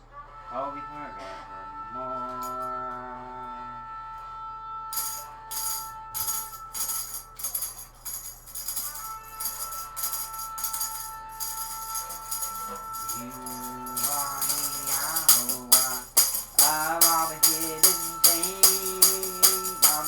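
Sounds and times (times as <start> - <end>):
person singing a note: 4.9 - 7.9, 8.6 - 20.0
tambourine jingles: 5.0 - 20.0.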